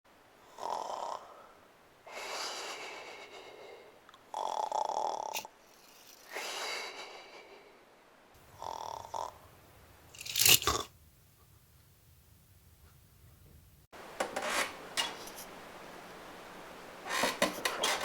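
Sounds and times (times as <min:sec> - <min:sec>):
person snoring: 0:00.4 - 0:01.5, 0:04.3 - 0:05.5, 0:08.5 - 0:09.4.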